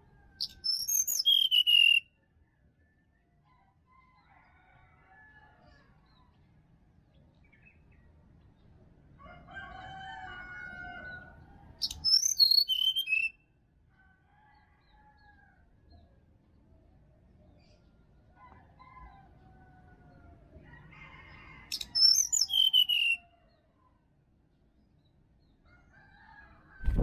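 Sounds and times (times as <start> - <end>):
bird whistling song: 0.4 - 2.1, 11.8 - 13.4, 21.7 - 23.2
rooster crowing: 9.2 - 11.4.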